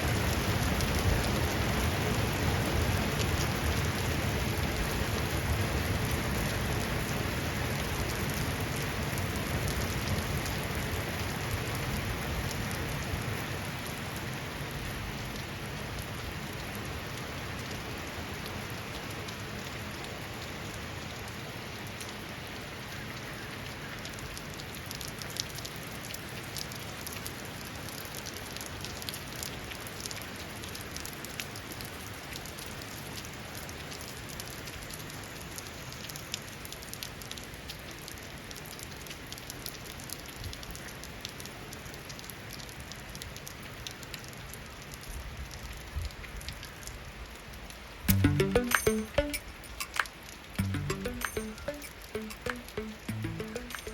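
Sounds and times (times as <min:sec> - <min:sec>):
steady rain falling: 0:00.0 - 0:53.9
raindrops ticking: 0:48.1 - 0:53.9.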